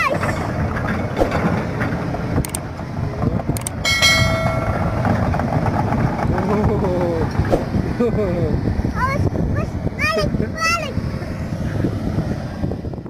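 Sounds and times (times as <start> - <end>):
diesel engine low rumble: 0.0 - 13.0
steady higher tone: 3.8 - 5.4.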